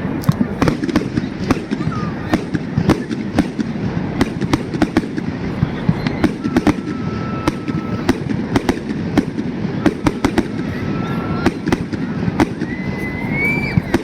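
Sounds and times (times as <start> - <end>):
fireworks bangs and crackles: 0.0 - 14.0
faint thin whistle: 6.0 - 8.1, 12.6 - 14.0.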